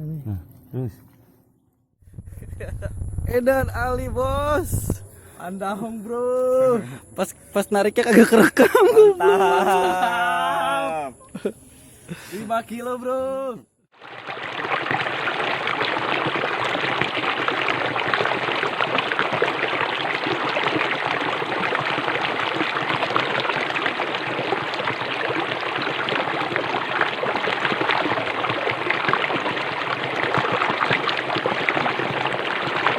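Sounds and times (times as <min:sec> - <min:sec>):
water flowing: 0:02.2 - 0:05.3, 0:14.0 - 0:32.9.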